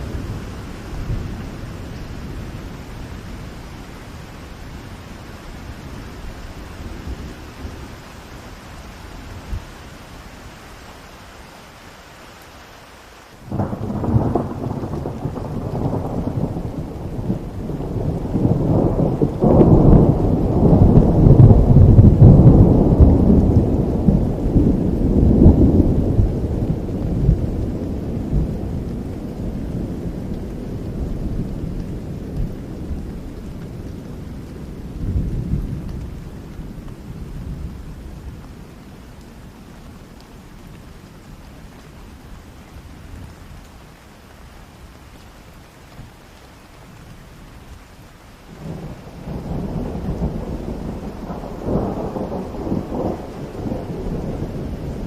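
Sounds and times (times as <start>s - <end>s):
rain falling: 0.0s - 55.0s
thunder rolling: 13.5s - 33.2s, 48.6s - 55.0s.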